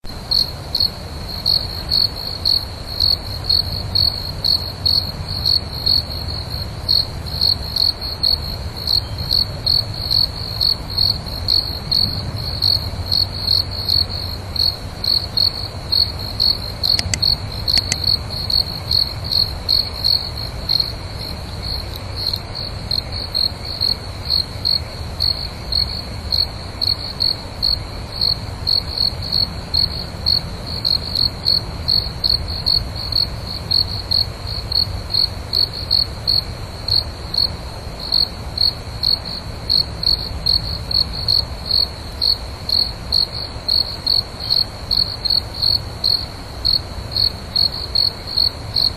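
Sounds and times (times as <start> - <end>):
cricket chirping: 0.2 - 48.9.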